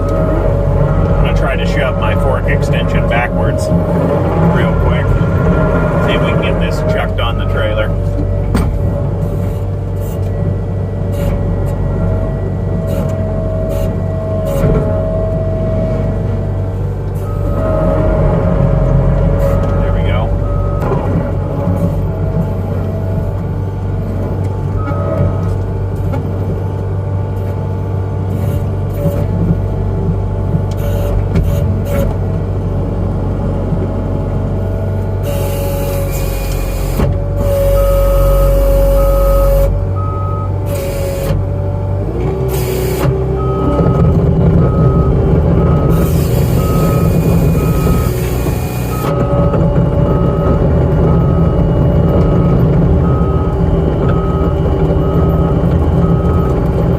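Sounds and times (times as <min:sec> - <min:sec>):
diesel engine running hard: 0:00.0 - 0:56.9
backup alarm beeping: 0:11.2 - 0:24.1, 0:35.2 - 0:41.3, 0:42.6 - 0:56.9
hydraulic whine and hissing: 0:35.2 - 0:44.0, 0:45.6 - 0:50.4.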